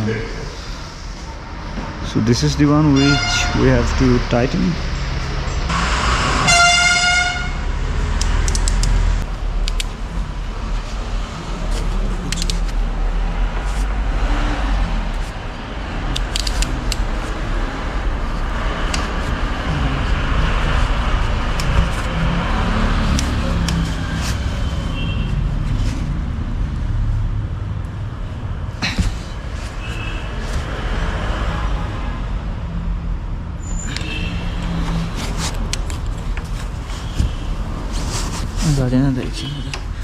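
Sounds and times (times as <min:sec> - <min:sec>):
vehicle horn toot: 0:02.9 - 0:03.7, 0:06.4 - 0:07.6, 0:24.9 - 0:25.4, 0:33.8 - 0:34.6.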